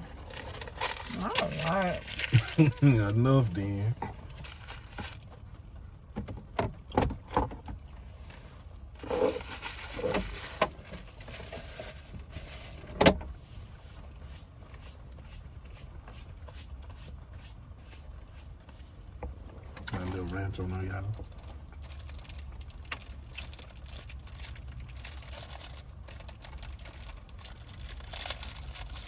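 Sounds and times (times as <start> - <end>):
food packaging clicks and rustles: 0.1 - 5.4, 9.0 - 12.8, 19.8 - 29.0.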